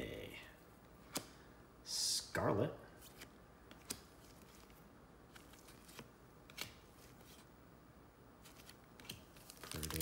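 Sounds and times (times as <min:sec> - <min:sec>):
cards flicking and sliding: 0:01.0 - 0:01.4, 0:03.0 - 0:07.5, 0:08.4 - 0:10.0.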